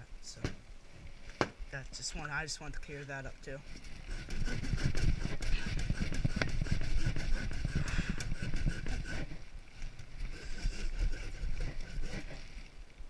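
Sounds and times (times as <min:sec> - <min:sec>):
sanding wood: 0:04.1 - 0:09.4, 0:10.3 - 0:12.6.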